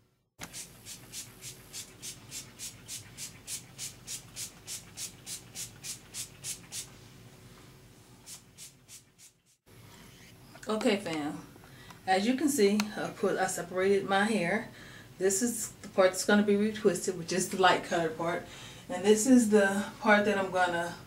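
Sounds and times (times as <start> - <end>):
scratching or rubbing strokes: 0.4 - 7.2, 8.0 - 10.4.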